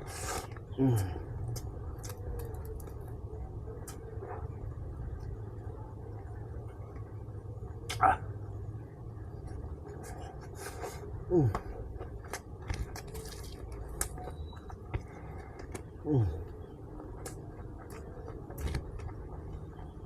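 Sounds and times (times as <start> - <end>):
steady low hum: 0.0 - 20.0
person humming: 0.8 - 1.2, 11.3 - 11.7, 16.0 - 16.5
chewing mouth sounds: 11.6 - 16.5.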